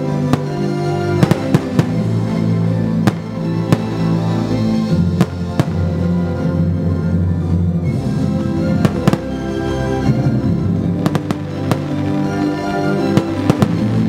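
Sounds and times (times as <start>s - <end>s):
loud music: 0.0s - 14.0s
fireworks bangs: 0.1s - 4.3s, 5.1s - 6.2s, 8.7s - 9.6s, 11.0s - 14.0s.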